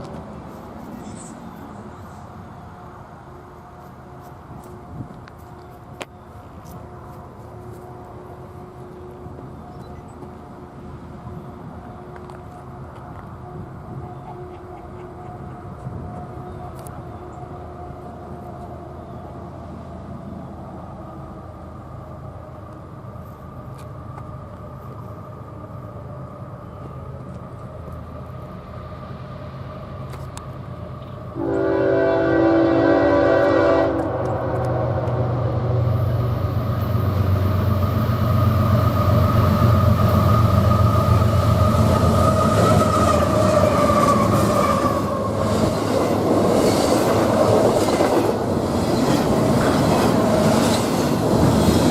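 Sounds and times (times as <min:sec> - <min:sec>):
train engine hum: 0:00.0 - 0:51.9
train rumbling past: 0:00.0 - 0:51.9
train horn blast: 0:31.4 - 0:35.7
wheels hissing on rails: 0:34.0 - 0:51.9.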